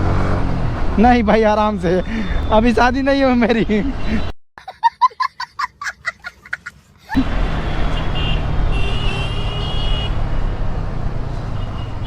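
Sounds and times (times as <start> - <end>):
motorcycle riding in traffic: 0.0 - 4.3, 7.2 - 12.0.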